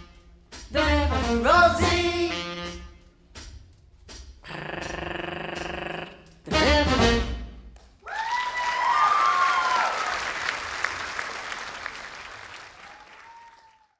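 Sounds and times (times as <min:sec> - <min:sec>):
swing band chord: 0:00.0 - 0:07.8
audience clapping: 0:07.8 - 0:13.9
audience whistling: 0:08.1 - 0:13.9.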